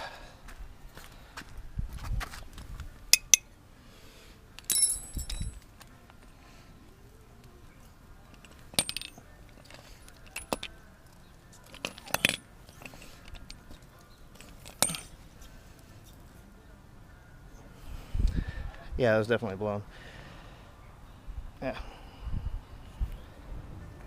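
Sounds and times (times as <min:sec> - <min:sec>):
metal tools clinking: 0:03.1 - 0:03.4, 0:04.6 - 0:05.6, 0:08.3 - 0:10.8, 0:11.6 - 0:15.2.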